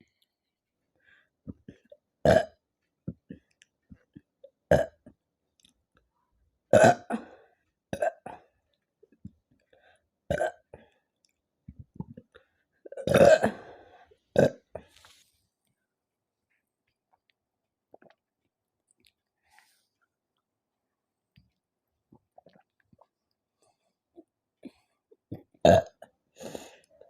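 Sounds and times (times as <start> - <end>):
woman burping: 6.7 - 8.4, 10.3 - 10.7, 12.9 - 13.8, 14.4 - 14.8, 25.6 - 26.0.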